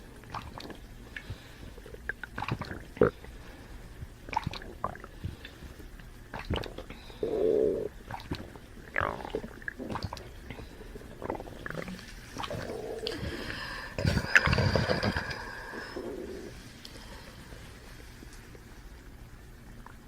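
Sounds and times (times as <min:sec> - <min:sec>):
burps: 0:01.9 - 0:03.3, 0:04.3 - 0:05.1, 0:06.3 - 0:13.3, 0:14.0 - 0:16.5
farts: 0:09.0 - 0:10.2.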